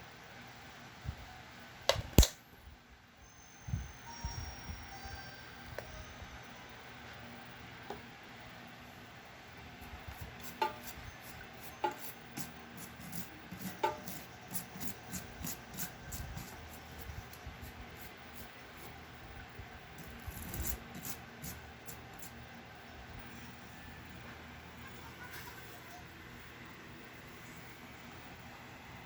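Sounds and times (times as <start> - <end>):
sharp clicks: 1.9 - 2.4
rubbing and scraping: 10.1 - 19.0, 20.0 - 22.4.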